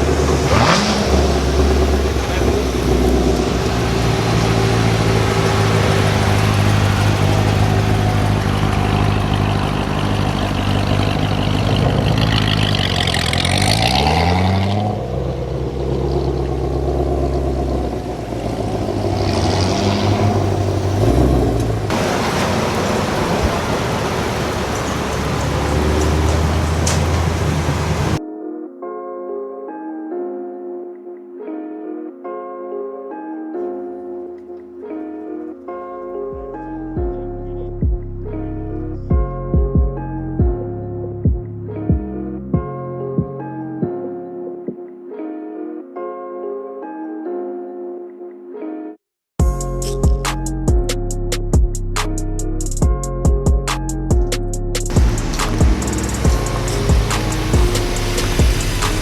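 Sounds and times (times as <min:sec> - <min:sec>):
car engine running while driving: 0:00.0 - 0:28.2, 0:54.7 - 0:59.0.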